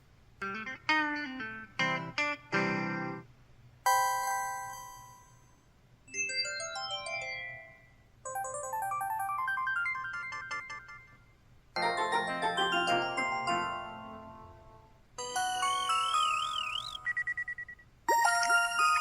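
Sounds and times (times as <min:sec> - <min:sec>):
melodic phone jingle: 0:06.2 - 0:11.0, 0:11.8 - 0:14.5, 0:15.2 - 0:19.0
electronic chime: 0:15.2 - 0:19.0.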